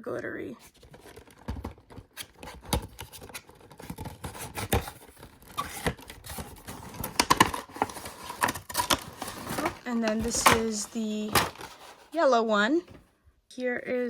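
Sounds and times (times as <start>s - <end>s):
cardboard box being handled: 0.6s - 12.3s.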